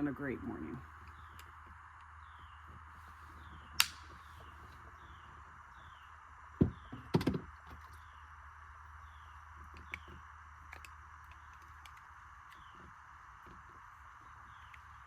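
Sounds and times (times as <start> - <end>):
fence clips snapping onto post: 3.8 - 4.0.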